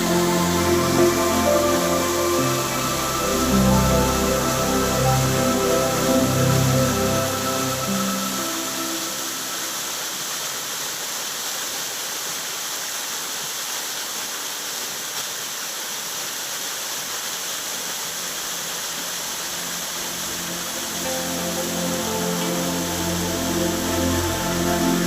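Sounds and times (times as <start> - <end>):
rush of running water: 0.0 - 25.0.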